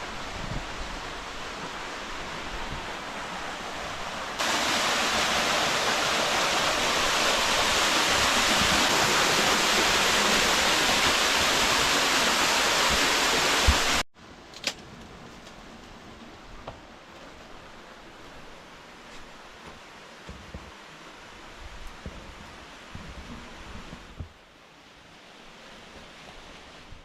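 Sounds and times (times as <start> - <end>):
rushing water: 0.0 - 14.1.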